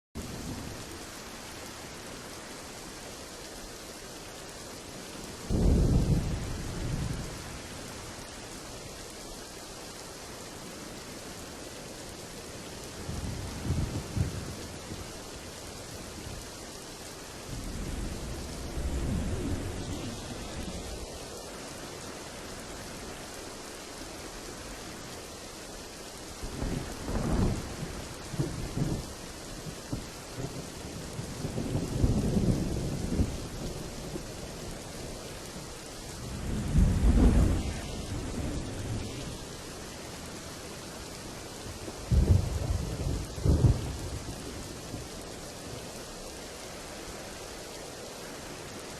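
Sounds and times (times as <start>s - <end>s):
steady rain: 0.2s - 48.9s
thunder rumbles: 5.4s - 8.3s, 12.9s - 16.5s, 17.4s - 21.2s, 26.4s - 46.4s.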